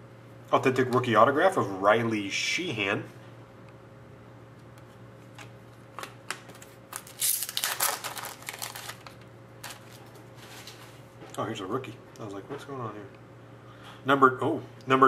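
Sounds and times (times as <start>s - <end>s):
cards clicking and rustling: 5.3s - 10.8s
packaging crinkling: 6.3s - 11.0s.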